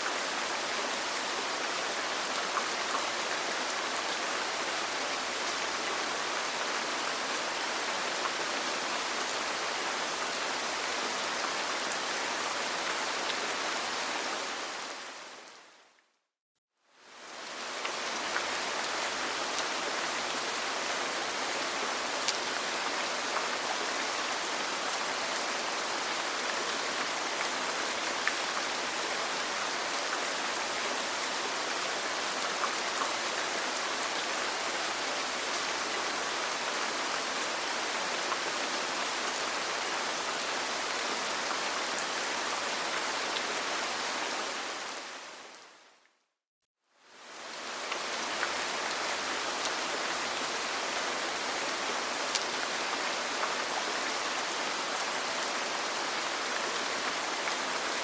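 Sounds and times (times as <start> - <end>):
steady rain: 0.0 - 16.0, 16.9 - 46.1, 47.0 - 58.0.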